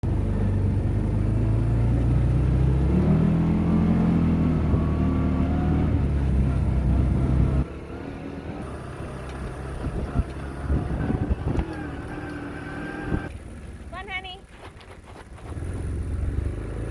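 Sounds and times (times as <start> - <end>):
vehicle engine running: 0.0 - 14.4, 15.2 - 16.9.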